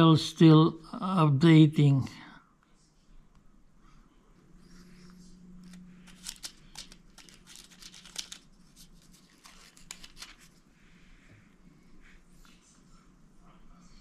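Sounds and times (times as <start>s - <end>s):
plastic film crackling: 5.6s - 10.6s.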